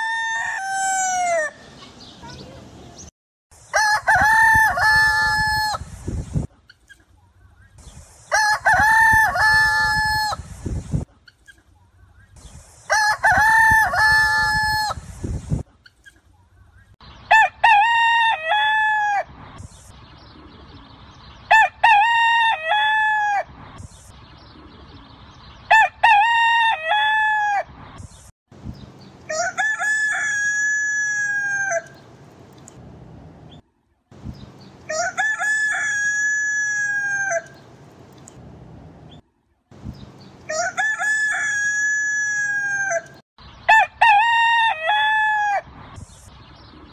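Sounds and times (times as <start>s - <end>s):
rooster crowing: 0.0s - 1.6s, 29.3s - 32.0s, 34.9s - 37.6s, 40.5s - 45.7s.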